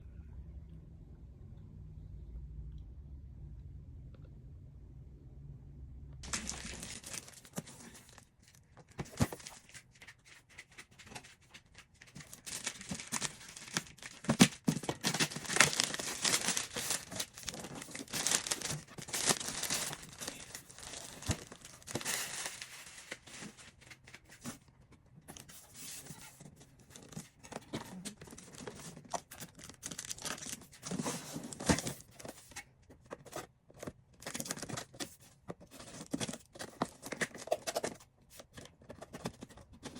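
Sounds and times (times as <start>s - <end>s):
packaging tearing and crinkling: 6.2s - 9.9s, 12.0s - 23.8s, 28.3s - 32.1s.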